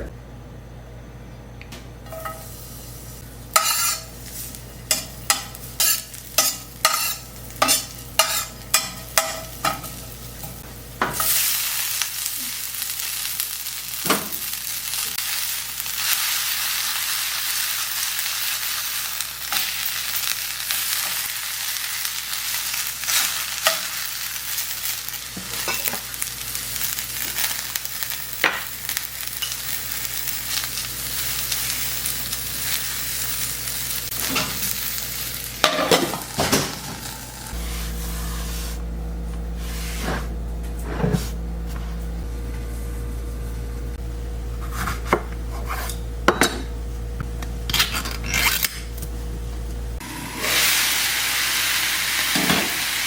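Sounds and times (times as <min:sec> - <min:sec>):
food sizzling in hot oil: 0:11.0 - 0:37.9, 0:50.0 - 0:53.0.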